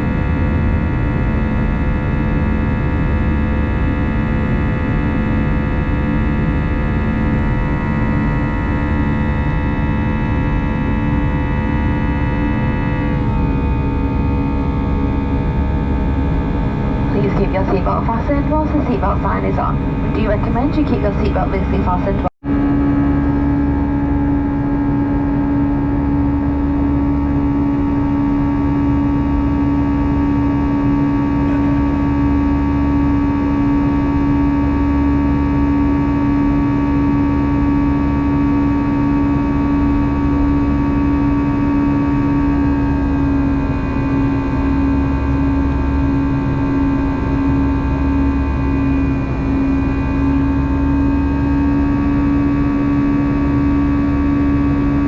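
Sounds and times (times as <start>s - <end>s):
jet engine drone in cabin: 0.0s - 55.0s.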